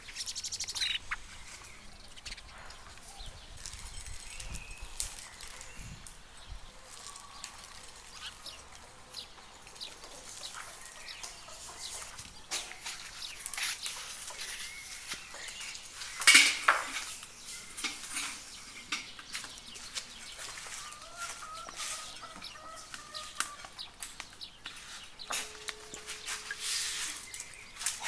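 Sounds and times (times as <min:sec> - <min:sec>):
chickens clucking: 0:00.0 - 0:03.4, 0:17.6 - 0:24.1
kitchen utensils and dishes clinking: 0:15.4 - 0:20.6, 0:25.2 - 0:28.0.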